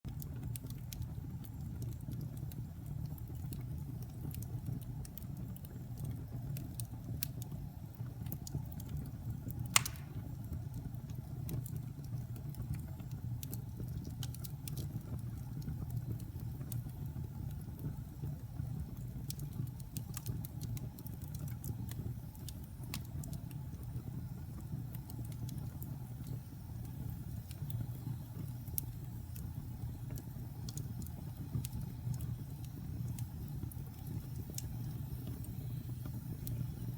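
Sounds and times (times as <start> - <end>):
fire crackling: 0.1 - 36.9
fire rumbling: 0.1 - 36.9
loud pop from fire: 9.7 - 10.4.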